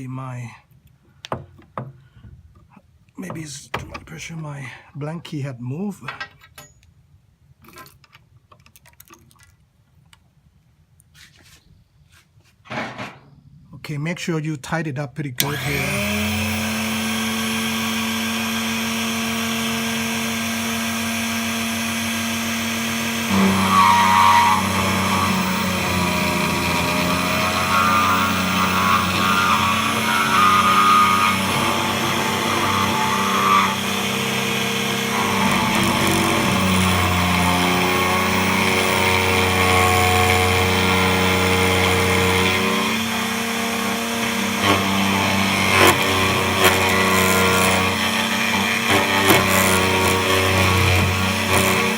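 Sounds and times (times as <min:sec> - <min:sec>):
cutter grinding key blank: 0:15.4 - 0:51.9
key cutting machine motor hum: 0:15.4 - 0:51.9.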